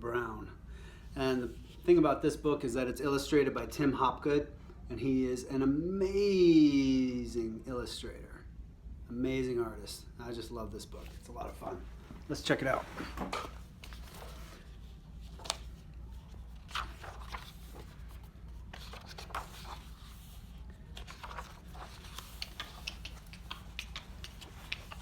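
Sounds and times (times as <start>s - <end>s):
steady low hum: 6.8s - 25.0s
paper pages rustling and turning: 12.4s - 25.0s.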